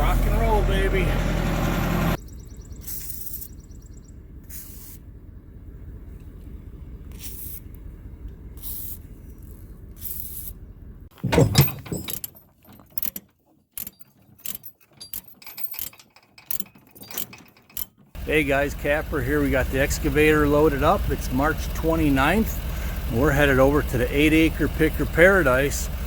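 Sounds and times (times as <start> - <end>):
vehicle engine running low: 0.0 - 11.1, 18.2 - 26.0
clicks and rattles: 11.1 - 18.2
heavy thump: 11.2 - 12.1.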